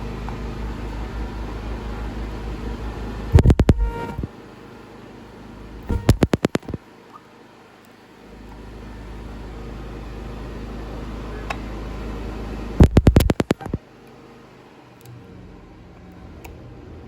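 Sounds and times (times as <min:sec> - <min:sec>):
welding machine humming: 0:00.0 - 0:17.0
sharp clicks: 0:05.9 - 0:06.8, 0:12.8 - 0:13.8.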